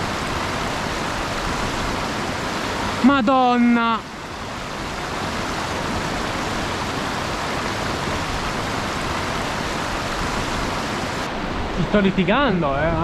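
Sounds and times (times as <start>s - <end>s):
mountain torrent rushing: 0.0s - 13.0s.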